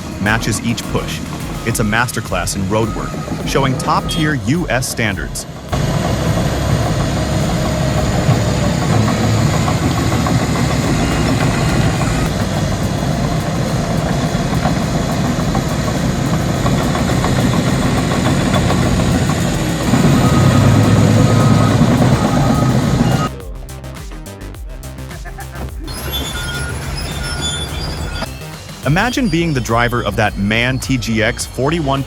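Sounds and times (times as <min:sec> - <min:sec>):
diesel engine running under load: 0:00.0 - 0:23.4.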